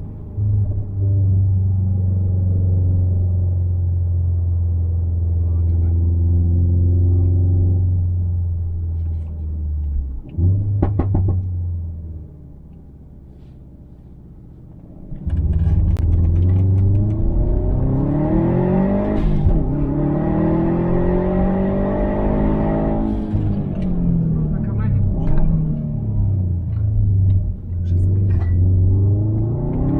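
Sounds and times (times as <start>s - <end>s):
turbocharged car engine accelerating: 14.8s - 29.9s.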